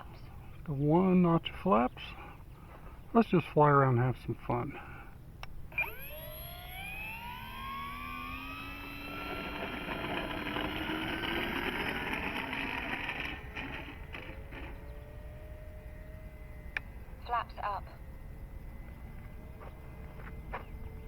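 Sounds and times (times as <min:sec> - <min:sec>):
electric motor and propeller whine: 0:05.4 - 0:21.0.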